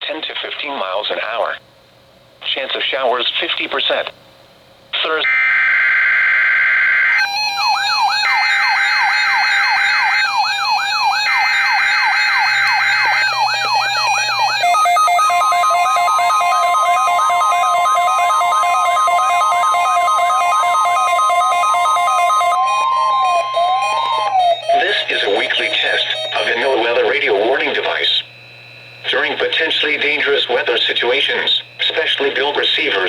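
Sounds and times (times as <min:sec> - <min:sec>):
wailing siren alarm: 0:05.2 - 0:28.2
slow warbling alarm: 0:05.2 - 0:28.5
steady tone: 0:07.2 - 0:20.4, 0:22.5 - 0:27.8
data header bursts: 0:07.2 - 0:22.6, 0:24.3 - 0:28.2
beeping: 0:07.2 - 0:30.2.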